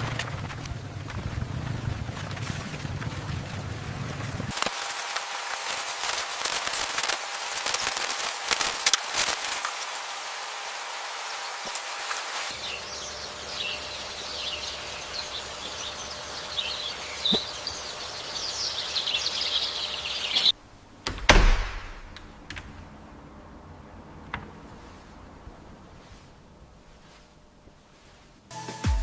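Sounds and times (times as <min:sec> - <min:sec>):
steady hiss: 0:04.4 - 0:13.0
birds chirping: 0:10.6 - 0:20.6.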